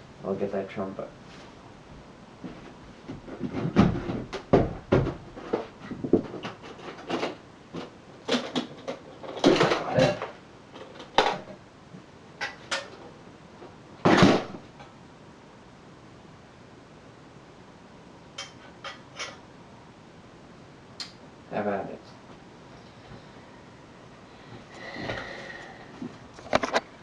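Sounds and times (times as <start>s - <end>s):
objects knocking and clattering: 3.1s - 11.6s, 14.0s - 14.8s.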